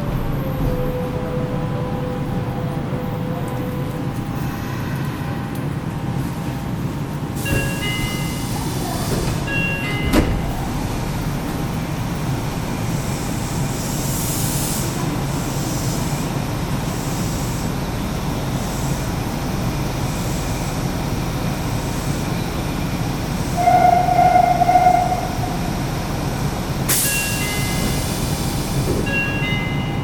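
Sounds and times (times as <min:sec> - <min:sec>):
subway train running rumble: 0:00.0 - 0:30.0
train doors shutting knock: 0:07.4 - 0:11.7
air hiss: 0:13.3 - 0:16.4.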